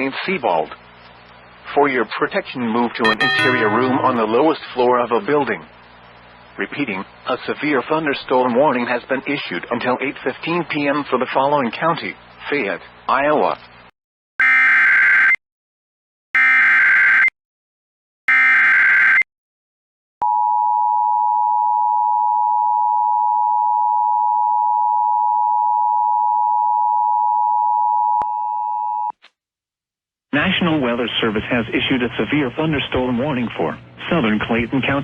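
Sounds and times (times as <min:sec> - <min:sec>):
alert attention tone: 0:03.0 - 0:04.6.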